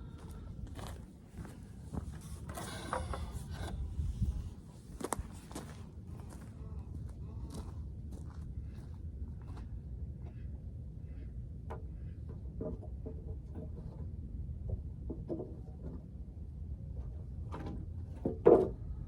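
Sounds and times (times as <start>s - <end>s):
wooden boards knocking and clattering: 12.3s - 14.0s, 14.6s - 16.0s, 17.5s - 18.8s.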